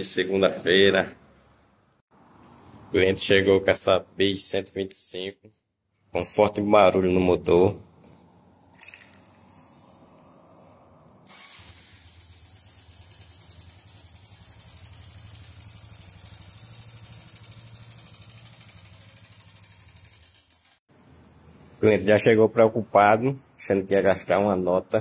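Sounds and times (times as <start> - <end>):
motorcycle engine idling: 11.9 - 20.8.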